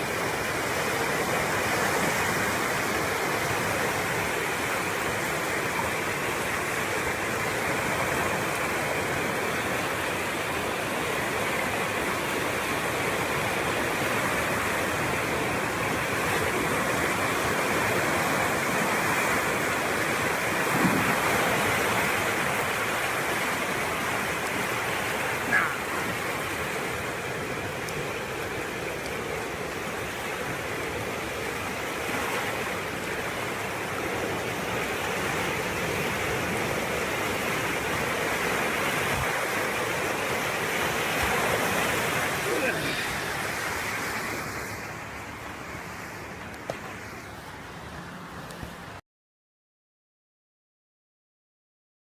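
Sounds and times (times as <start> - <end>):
floodwater rushing: 0.0 - 49.0.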